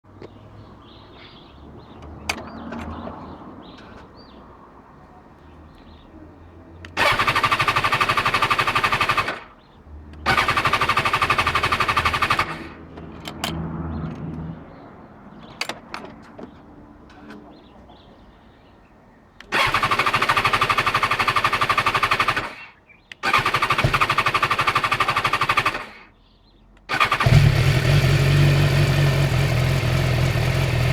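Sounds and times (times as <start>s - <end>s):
motorcycle starter clattering: 23.2s - 25.9s, 26.9s - 30.9s.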